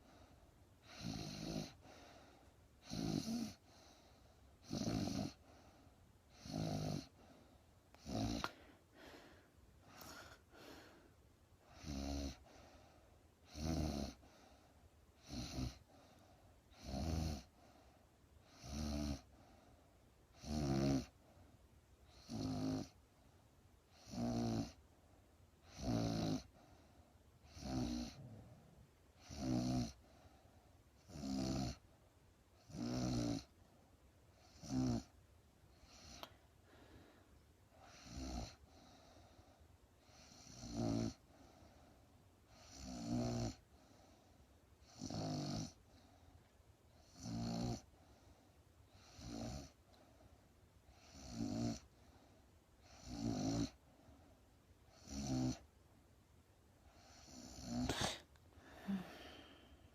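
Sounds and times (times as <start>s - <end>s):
woman snoring: 0.8s - 1.8s, 2.8s - 3.7s, 4.6s - 5.4s, 6.3s - 7.1s, 8.0s - 9.2s, 11.7s - 12.4s, 13.5s - 14.2s, 15.2s - 15.8s, 16.8s - 17.5s, 18.6s - 19.3s, 20.4s - 21.1s, 22.2s - 23.0s, 24.0s - 24.8s, 25.7s - 26.5s, 27.5s - 28.4s, 29.2s - 30.0s, 31.1s - 31.8s, 32.7s - 33.5s, 34.5s - 35.1s, 37.8s - 38.6s, 40.2s - 41.2s, 42.6s - 43.6s, 44.9s - 45.8s, 47.0s - 47.9s, 49.0s - 49.8s, 51.0s - 51.9s, 53.0s - 53.8s, 55.0s - 55.6s, 57.0s - 59.8s.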